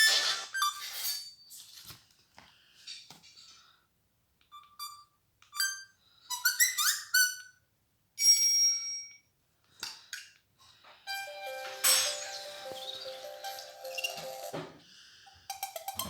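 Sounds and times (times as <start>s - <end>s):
phone notification beeps: 11.1s - 14.7s.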